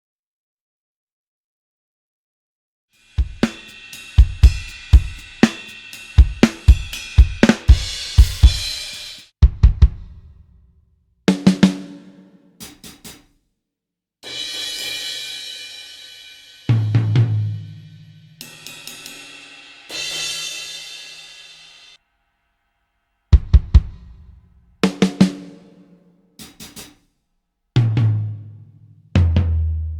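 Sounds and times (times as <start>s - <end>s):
cymbal crashes: 3.0s - 9.3s, 14.3s - 17.1s, 18.4s - 22.0s
kick snare and cymbal hits: 3.0s - 10.4s, 11.3s - 13.3s, 14.2s - 22.0s, 26.4s - 27.0s
pitched drum hit: 3.2s - 10.0s.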